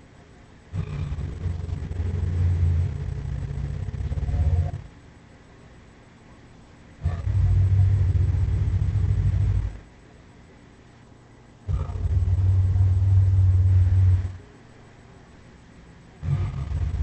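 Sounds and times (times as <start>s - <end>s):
monster growling: 0.8s - 4.9s, 7.0s - 9.8s, 11.7s - 14.4s, 16.2s - 17.0s.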